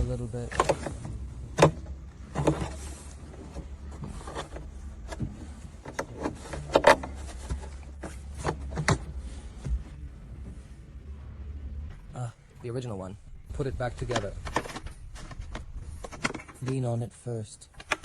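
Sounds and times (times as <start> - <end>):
low steady hum: 0.0 - 18.0
rustling: 0.0 - 18.0
plastic trim clicks and knocks: 17.8 - 18.0.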